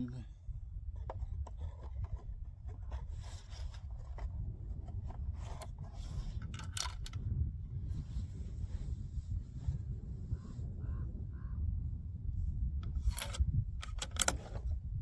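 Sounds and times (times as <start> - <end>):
faint scrapes: 1.6 - 6.4.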